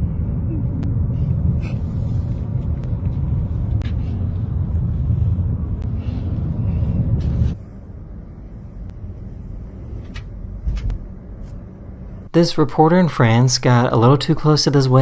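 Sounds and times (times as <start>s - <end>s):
road and engine rumble: 0.0s - 14.2s.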